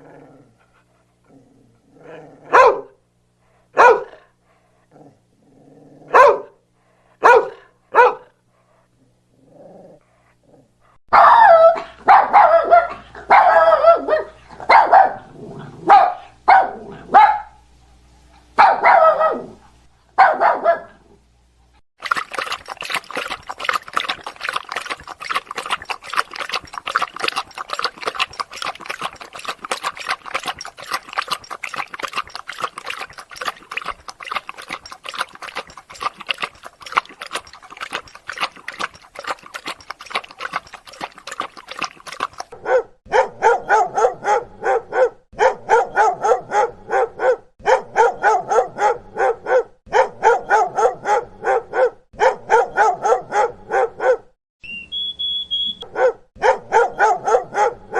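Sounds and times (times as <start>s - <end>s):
dogs barking: 2.5s - 3.0s, 3.8s - 4.3s, 6.1s - 6.6s, 7.2s - 8.4s, 11.1s - 15.3s, 15.9s - 17.6s, 18.6s - 19.6s, 20.2s - 21.0s, 22.0s - 54.3s, 55.8s - 57.9s
high-pitched dog yapping: 2.5s - 3.0s, 3.8s - 4.2s, 6.1s - 6.6s, 7.2s - 8.3s, 11.1s - 15.3s, 15.9s - 17.6s, 18.6s - 19.6s, 20.2s - 20.9s, 22.0s - 54.3s, 55.8s - 57.9s.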